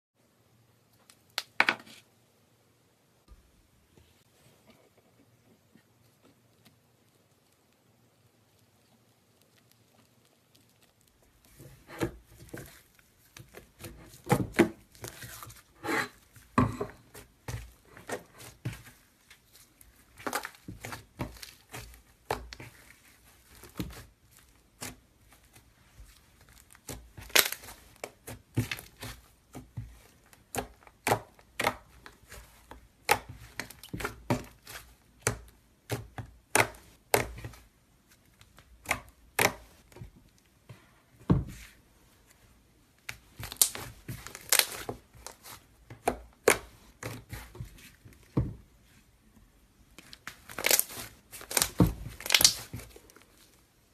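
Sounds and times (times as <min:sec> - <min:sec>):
slime crackling and popping: 0:07.1 - 0:15.7, 0:17.1 - 0:29.2, 0:43.1 - 0:45.5, 0:50.1 - 0:53.5.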